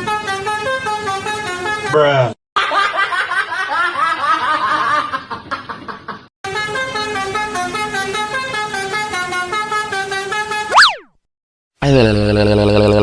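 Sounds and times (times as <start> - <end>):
multi-tone bus horn: 6.5 - 10.3.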